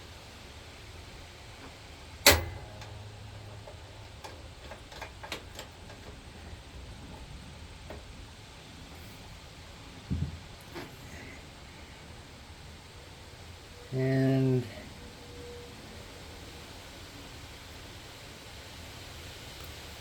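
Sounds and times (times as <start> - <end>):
ringing metal clank: 2.2 - 6.0.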